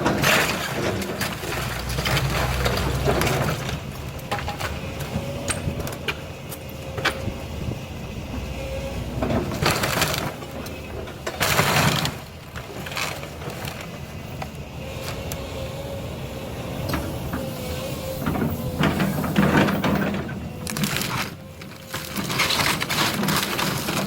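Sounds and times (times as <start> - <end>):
crashing and cracking debris: 0.0 - 6.2, 9.2 - 15.4, 18.3 - 24.0
demolition machine engine drone: 0.0 - 24.0.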